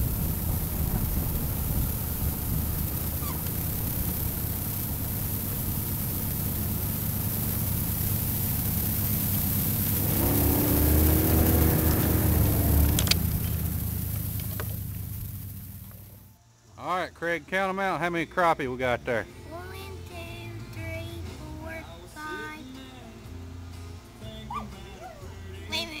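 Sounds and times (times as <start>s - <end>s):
boat motor running: 0.0s - 16.3s
high whine: 0.0s - 16.4s
sharp click: 12.9s - 13.6s.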